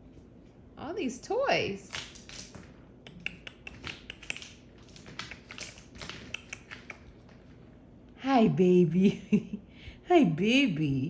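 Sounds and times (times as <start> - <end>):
puppy playing with toy clicks: 2.0 - 7.1.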